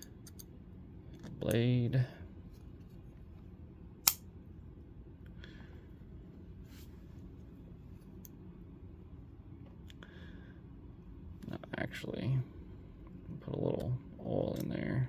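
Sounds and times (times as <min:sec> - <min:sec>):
sharp knife click: 0:04.0 - 0:04.2.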